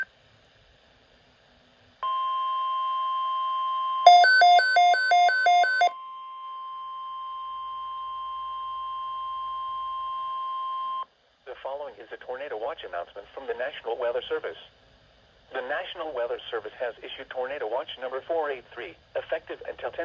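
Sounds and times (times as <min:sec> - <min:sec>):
steady electronic warning tone: 0:04.1 - 0:05.9.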